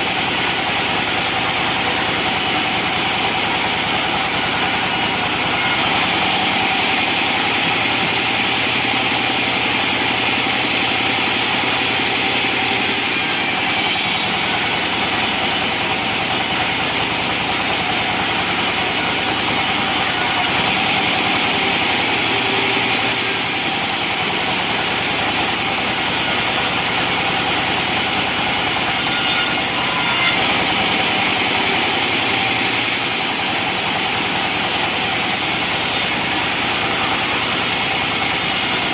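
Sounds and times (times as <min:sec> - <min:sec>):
engine drone: 0:00.0 - 0:38.9
high saw hiss and whine: 0:00.0 - 0:38.9.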